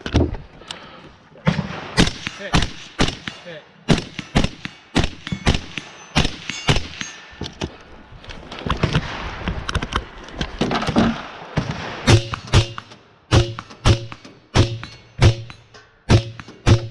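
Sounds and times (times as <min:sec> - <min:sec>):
rifle shots: 0:01.6 - 0:07.2, 0:11.2 - 0:16.9
steel targets clanging: 0:04.8 - 0:07.8, 0:12.0 - 0:16.9.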